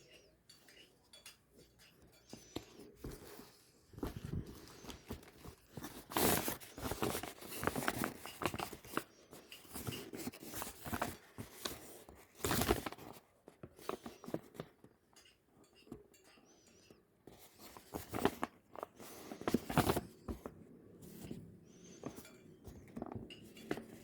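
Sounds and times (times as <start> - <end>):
packaging rustling and crinkling: 2.5 - 14.7, 17.4 - 24.0.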